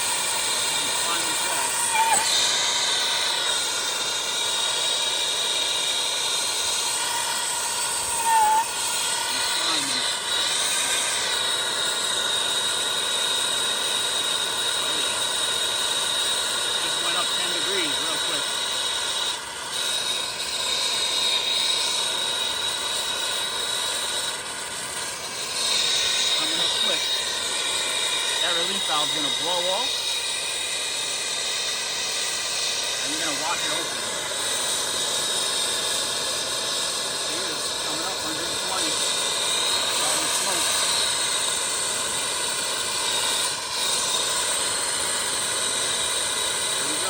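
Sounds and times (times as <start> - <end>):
torch flame hissing: 0.0 - 47.0
brief squeal: 0.7 - 3.7, 6.6 - 11.6.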